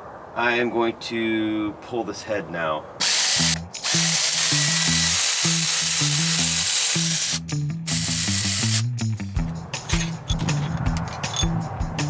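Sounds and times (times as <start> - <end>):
background music with bass line: 7.4 - 12.0.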